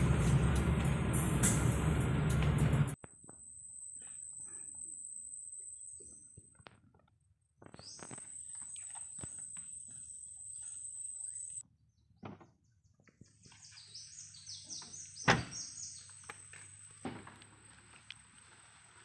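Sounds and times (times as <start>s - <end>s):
birds chirping: 7.6s - 17.0s.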